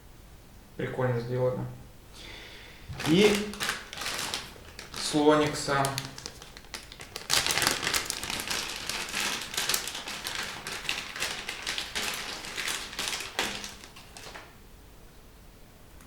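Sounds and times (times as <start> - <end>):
plastic packaging crinkling: 2.9 - 14.6.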